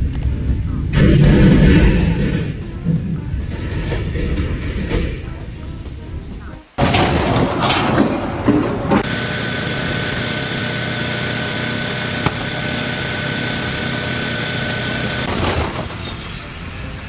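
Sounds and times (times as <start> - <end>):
motor running with high whine: 7.5 - 17.0.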